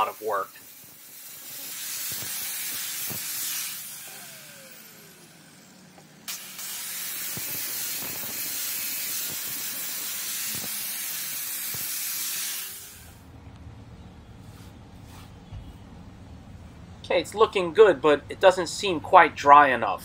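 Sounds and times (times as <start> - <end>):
hose spraying water hiss: 0.0 - 3.9, 6.3 - 13.2.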